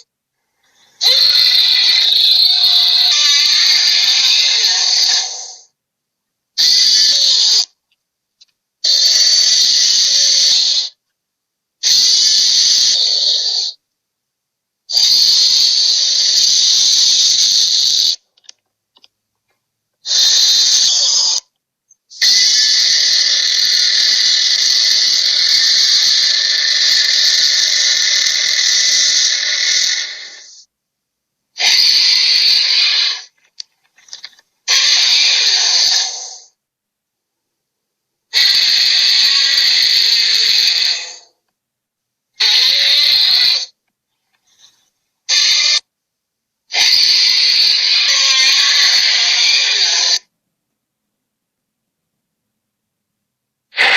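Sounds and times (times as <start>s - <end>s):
shrill monster screeches: 1.0s - 5.7s, 6.6s - 7.8s, 8.8s - 11.0s, 11.8s - 13.8s, 14.9s - 18.2s, 20.1s - 21.5s, 22.2s - 30.7s, 31.6s - 36.5s, 38.3s - 41.4s, 42.4s - 43.8s, 45.3s - 45.9s, 46.7s - 50.3s.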